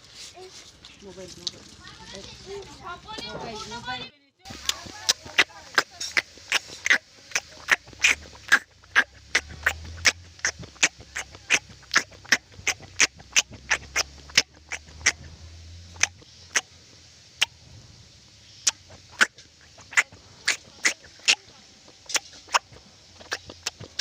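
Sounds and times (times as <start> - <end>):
chewing sweet corn: 4.5 - 24.0
low hum: 7.9 - 20.4.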